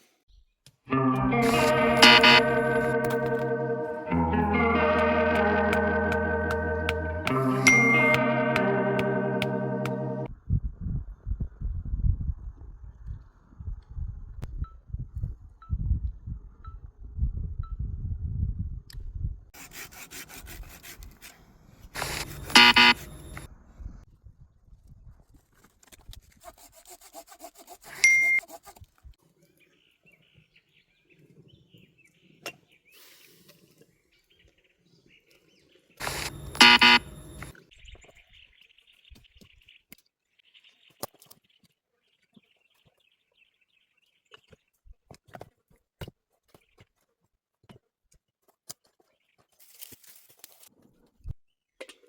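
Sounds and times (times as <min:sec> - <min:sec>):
loud pitched screech: 0:00.9 - 0:10.3.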